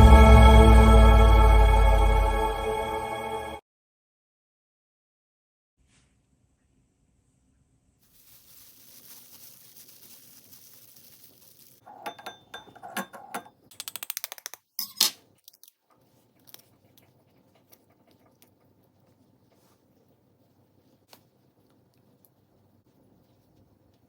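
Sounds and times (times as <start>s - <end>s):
kitchenware clattering: 11.8s - 13.7s, 14.8s - 15.2s.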